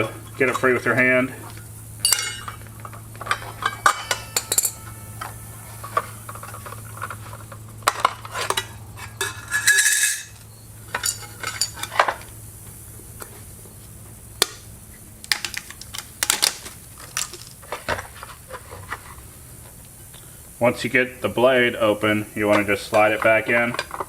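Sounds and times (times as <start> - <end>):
metallic clinks and scrapes: 0.0 - 12.2
steady low hum: 0.0 - 24.0.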